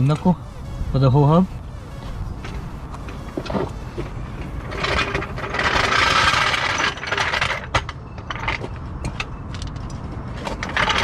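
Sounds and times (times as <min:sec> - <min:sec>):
metal parts scraping: 0:03.2 - 0:08.6, 0:10.5 - 0:11.0.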